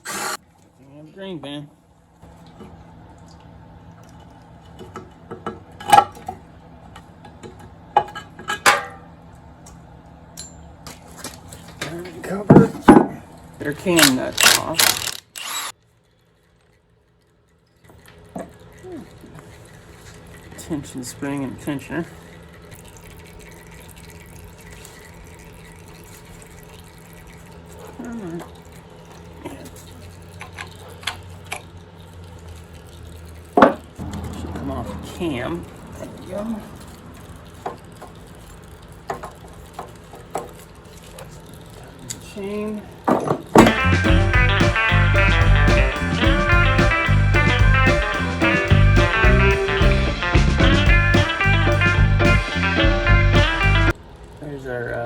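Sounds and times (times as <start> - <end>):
metal tools clinking: 13.8 - 15.7
metal parts and tools clicking: 13.8 - 20.5.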